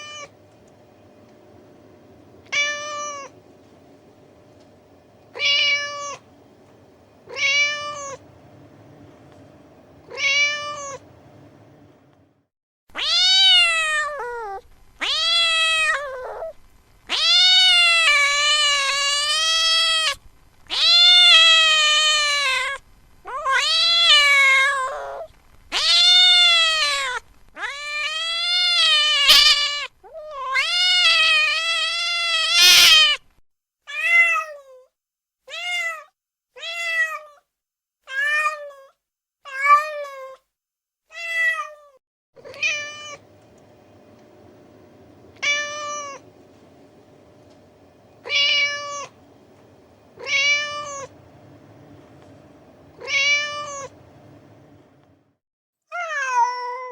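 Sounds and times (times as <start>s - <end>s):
cat meowing: 7.3s - 8.2s, 10.1s - 11.0s, 13.0s - 16.5s, 20.7s - 33.2s, 53.0s - 54.0s.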